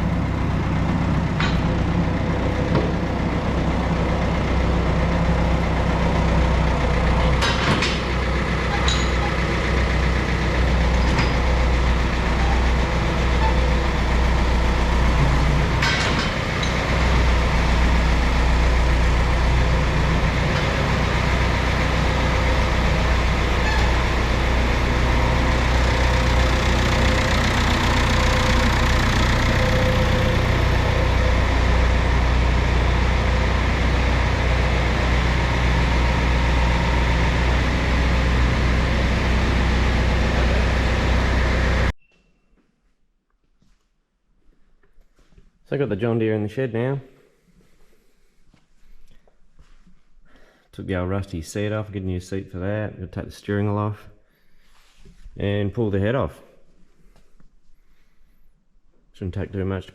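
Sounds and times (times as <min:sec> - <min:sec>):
tractor diesel engine idling: 0:00.0 - 0:41.9.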